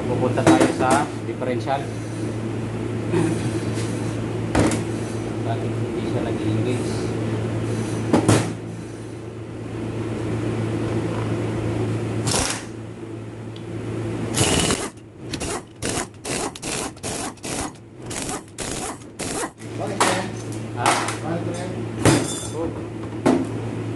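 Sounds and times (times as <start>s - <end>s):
steady low hum: 0.0s - 23.9s
short mechanical rattles: 14.3s - 19.6s.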